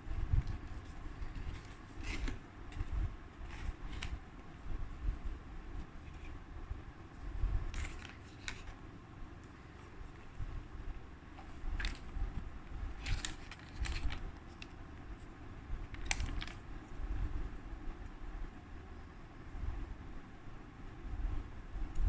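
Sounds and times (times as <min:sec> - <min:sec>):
packaging clicks and rustles: 0:00.3 - 0:04.6, 0:07.6 - 0:10.4, 0:11.4 - 0:14.9, 0:15.8 - 0:16.7.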